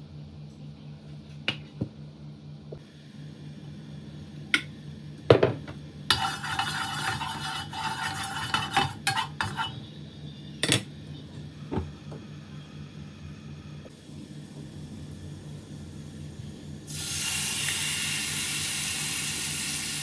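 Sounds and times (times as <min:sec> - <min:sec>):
metal utensils scraping a pan: 0:06.1 - 0:09.8
fish sizzling in a pan: 0:16.9 - 0:20.0.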